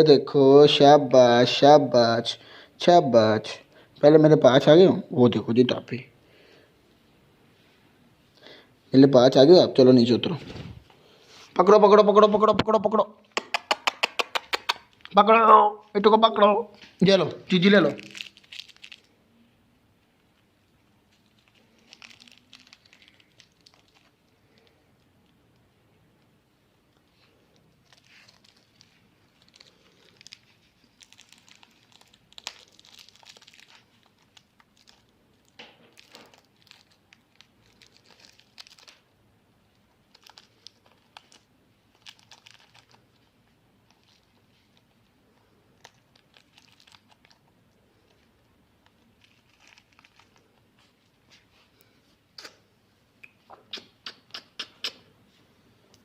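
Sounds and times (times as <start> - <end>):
parakeet crinkling wrapper: 14.2 - 15.2, 16.8 - 19.2, 20.0 - 25.8, 27.0 - 51.1.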